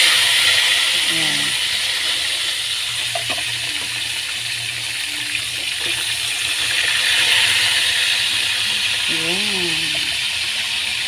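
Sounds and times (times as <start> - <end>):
fish sizzling in hot oil: 0.0 - 11.0.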